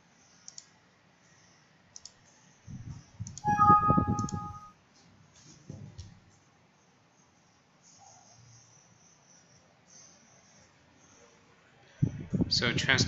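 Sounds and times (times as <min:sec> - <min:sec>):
electronic multi-pitch tone: 0:03.4 - 0:04.7.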